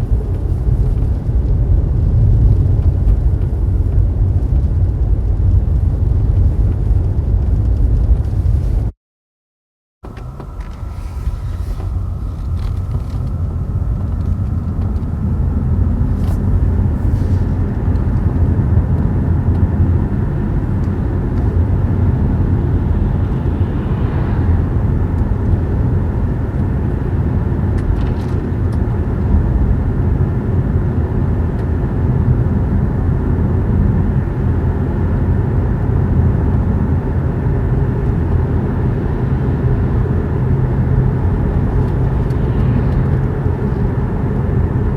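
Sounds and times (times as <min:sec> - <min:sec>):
road and tyre rumble: 0:00.0 - 0:09.0, 0:10.0 - 0:44.9.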